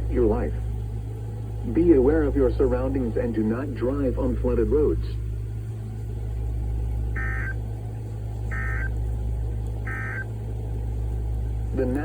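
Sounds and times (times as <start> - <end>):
steady low hum: 0.0 - 12.0
buzzy warbling data tones: 7.2 - 7.6, 8.5 - 8.9, 9.8 - 10.2.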